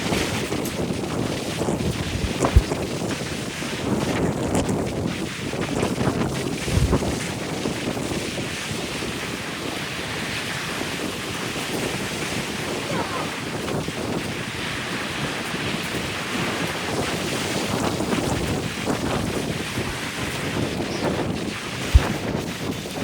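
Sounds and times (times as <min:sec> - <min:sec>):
wind blowing across microphone: 0:00.0 - 0:23.0
ocean waves: 0:06.6 - 0:23.0.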